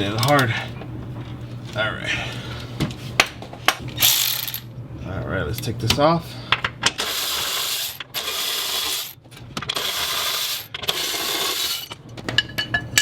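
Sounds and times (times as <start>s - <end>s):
ratchet wrench clicking: 4.0s - 4.6s, 7.0s - 12.0s.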